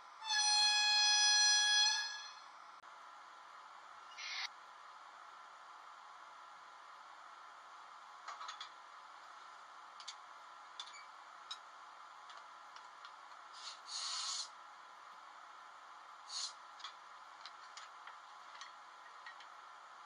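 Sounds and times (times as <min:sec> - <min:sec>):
short hiss of air: 0:13.5 - 0:14.5, 0:16.3 - 0:16.6.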